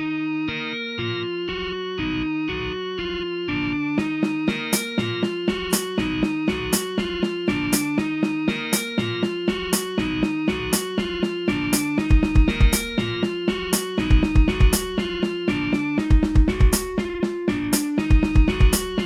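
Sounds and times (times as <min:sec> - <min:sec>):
plucked-string melody: 0:04.0 - 0:19.0
steady beat: 0:04.0 - 0:19.0.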